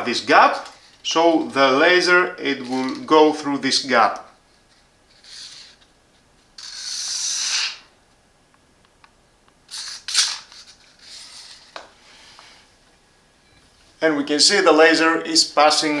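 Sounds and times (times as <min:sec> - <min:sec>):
tape measure rasping slide: 0:05.1 - 0:05.9, 0:06.6 - 0:07.9, 0:09.7 - 0:11.8.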